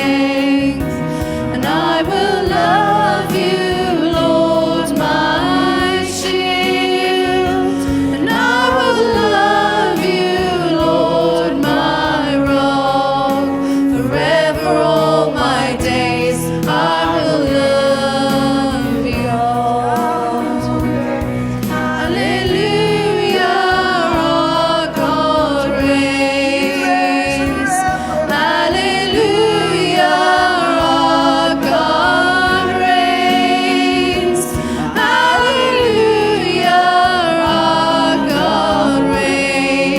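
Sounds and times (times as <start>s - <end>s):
instrumental accompaniment: 0.0s - 39.9s
voices singing worship song: 0.0s - 39.9s.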